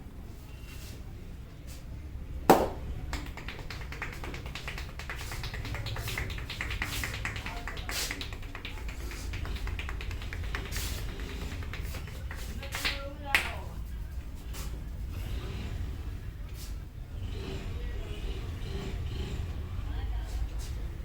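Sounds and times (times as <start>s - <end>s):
sharp loud crack: 2.5s - 2.9s
hands tapping on head: 2.5s - 13.5s.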